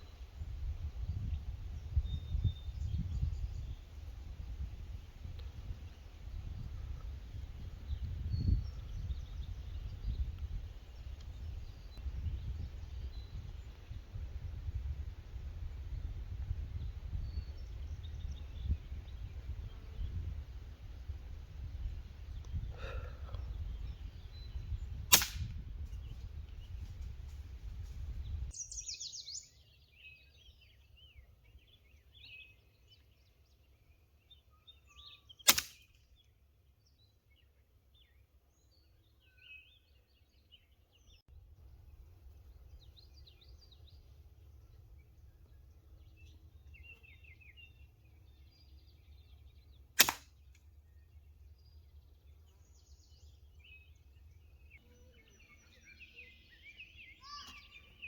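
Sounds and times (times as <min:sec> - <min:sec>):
small birds chirping: 0:00.0 - 0:04.3, 0:05.2 - 0:14.8, 0:16.4 - 0:20.6, 0:21.6 - 0:58.0
air rifle shots: 0:25.1 - 0:25.6, 0:35.5 - 0:35.8, 0:50.0 - 0:50.3.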